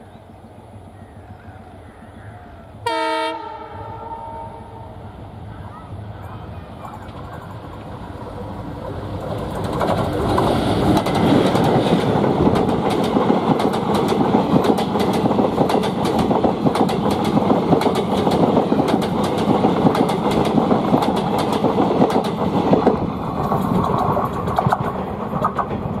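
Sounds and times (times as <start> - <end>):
steady train rumble: 0.0 - 26.0
train wheels clattering: 9.1 - 26.0.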